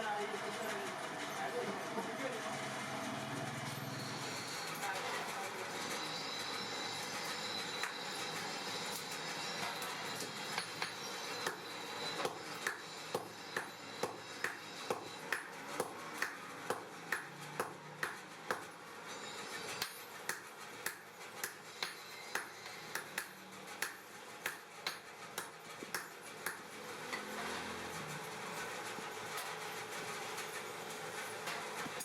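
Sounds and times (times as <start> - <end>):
hammer striking steel on anvil: 8.9 - 27.4.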